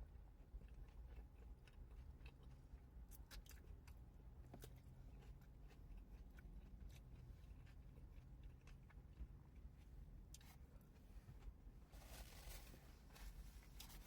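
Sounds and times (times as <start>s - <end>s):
low steady rumble: 0.0s - 14.0s
person chewing: 0.6s - 9.7s.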